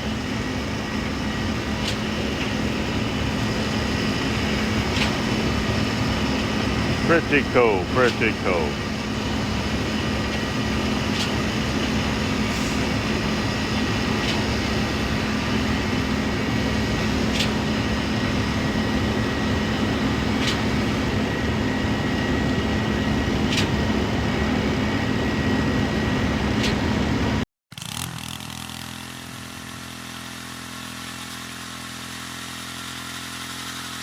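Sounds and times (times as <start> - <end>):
pump truck engine humming: 0.0 - 27.2.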